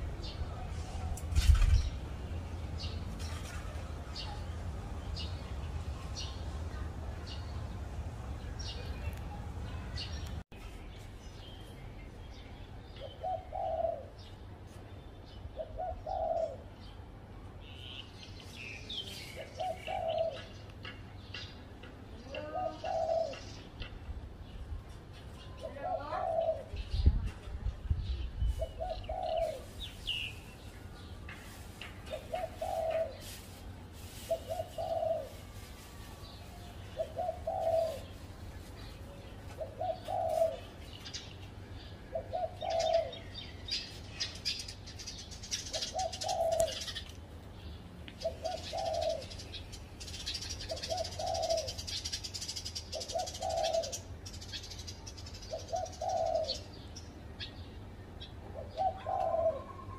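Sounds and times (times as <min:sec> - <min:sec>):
small birds chirping: 0:00.0 - 0:59.9
dove cooing: 0:13.0 - 0:14.2, 0:15.6 - 0:16.7, 0:19.4 - 0:20.5, 0:22.3 - 0:23.5, 0:25.6 - 0:26.8, 0:28.6 - 0:29.8, 0:32.1 - 0:33.3, 0:34.2 - 0:35.6, 0:36.9 - 0:38.2, 0:39.6 - 0:40.8, 0:42.1 - 0:43.4, 0:45.7 - 0:47.0, 0:48.2 - 0:49.4, 0:50.1 - 0:54.0, 0:55.5 - 0:56.8, 0:58.6 - 0:59.9.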